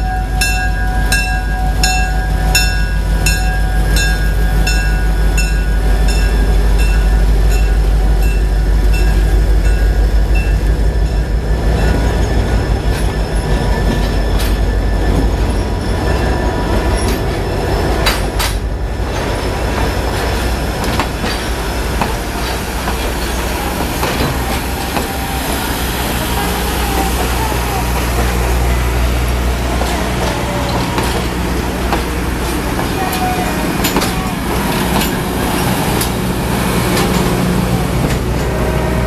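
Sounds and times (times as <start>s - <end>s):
bell ringing: 0.0s - 12.4s
train passing rumble: 0.0s - 39.0s
wheels clattering over rails: 0.4s - 39.0s.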